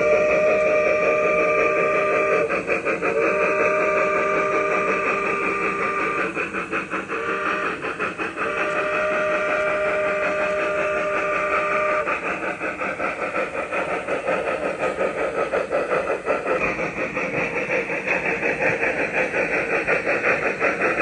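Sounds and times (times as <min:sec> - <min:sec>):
steam locomotive whistle: 0:00.0 - 0:12.2
steam locomotive exhaust chuff: 0:00.0 - 0:21.0.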